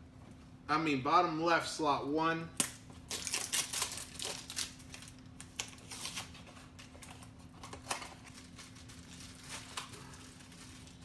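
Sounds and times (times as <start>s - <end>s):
packaging crinkling: 3.0s - 11.0s.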